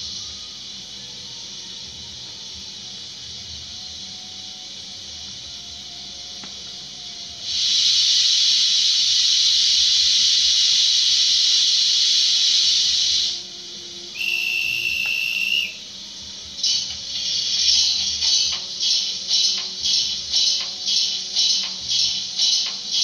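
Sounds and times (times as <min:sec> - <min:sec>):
loud steam hiss: 0:00.0 - 0:23.0
sharp hissing puffs: 0:00.0 - 0:23.0
steam whistle: 0:06.9 - 0:23.0.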